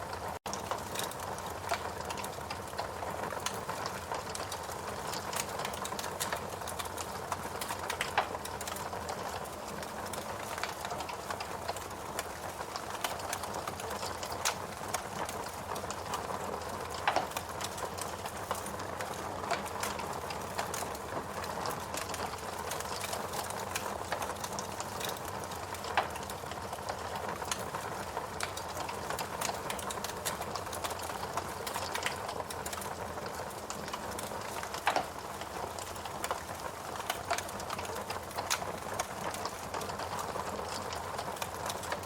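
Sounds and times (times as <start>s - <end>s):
fire crackling and popping: 0.0s - 42.0s
logs burning in a fireplace: 0.0s - 42.0s.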